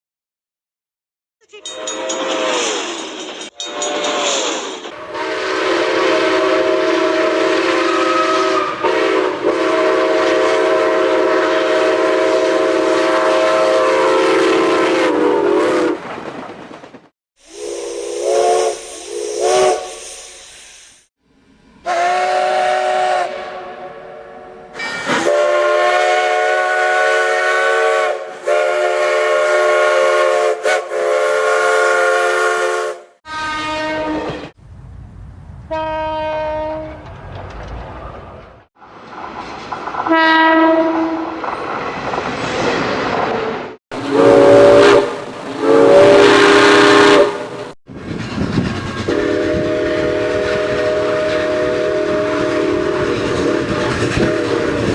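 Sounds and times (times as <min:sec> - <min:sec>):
steam locomotive chime whistle: 0:01.4 - 0:04.4, 0:05.0 - 0:15.9, 0:17.4 - 0:20.8, 0:21.7 - 0:34.6, 0:44.0 - 0:47.8, 0:49.0 - 0:54.9
steam hiss: 0:02.1 - 0:09.2, 0:17.4 - 0:21.1.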